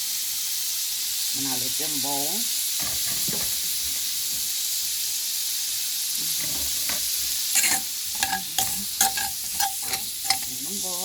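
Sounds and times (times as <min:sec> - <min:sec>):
pot sizzling on stove: 0:00.0 - 0:11.0
utensil clinking against pot: 0:06.4 - 0:10.6.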